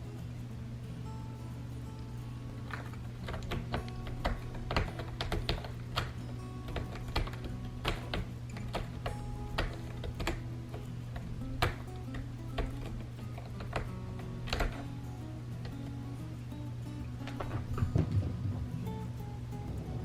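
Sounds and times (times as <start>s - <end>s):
soft background music: 0.0s - 20.0s.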